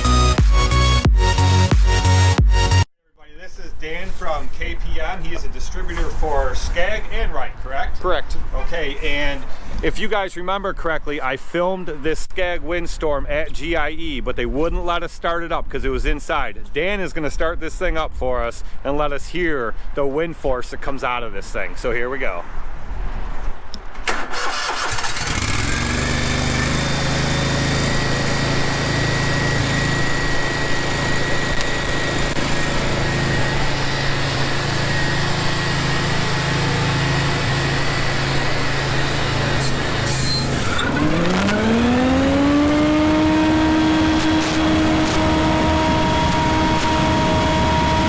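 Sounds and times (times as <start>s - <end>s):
debris blower running: 25.1s - 48.0s.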